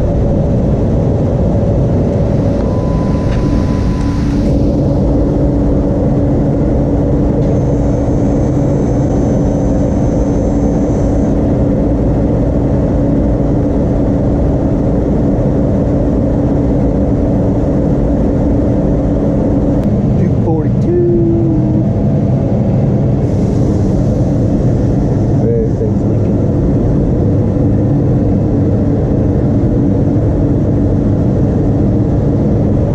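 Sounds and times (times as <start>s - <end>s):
machine droning: 0.0s - 32.9s.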